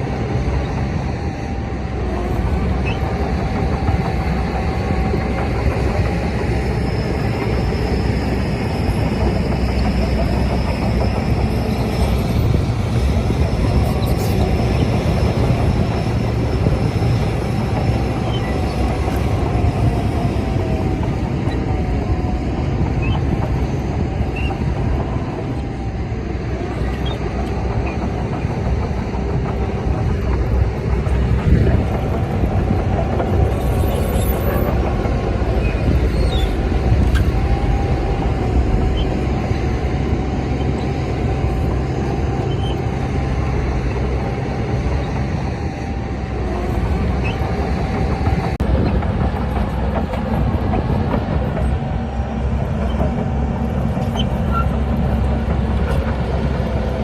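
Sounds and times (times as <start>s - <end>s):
bulldozer diesel engine droning: 0.0s - 57.0s.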